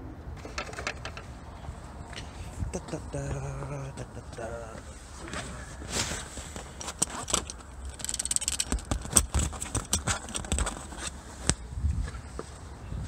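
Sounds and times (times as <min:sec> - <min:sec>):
plastic and metal clicks and rattles: 0:06.7 - 0:11.1.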